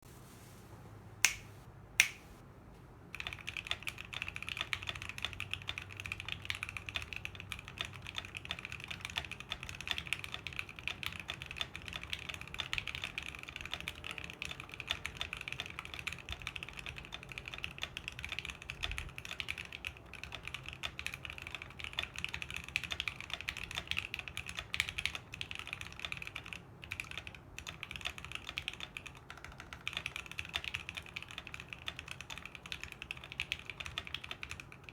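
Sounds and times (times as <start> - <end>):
sharp click: 1.2 - 2.4
fast typing on mechanical keyboard: 3.1 - 34.9.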